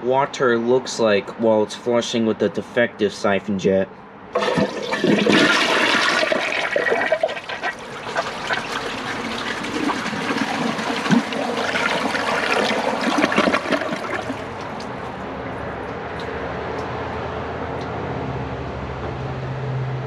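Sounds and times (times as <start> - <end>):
toilet flushing: 4.4 - 15.0.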